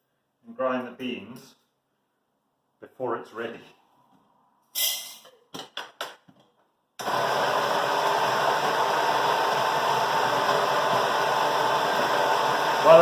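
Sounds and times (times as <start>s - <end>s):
electric coffee grinder grinding: 7.0s - 13.0s.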